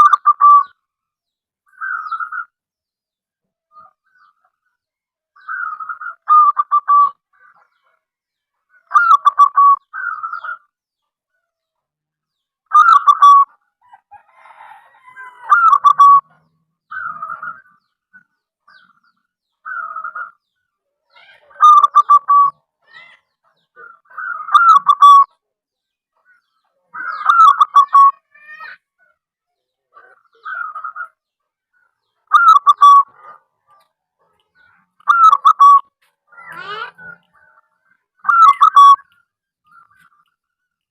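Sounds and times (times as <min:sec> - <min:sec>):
dove cooing: 0:12.7 - 0:16.3, 0:21.3 - 0:23.1, 0:24.0 - 0:25.3, 0:27.0 - 0:28.2, 0:32.3 - 0:33.4.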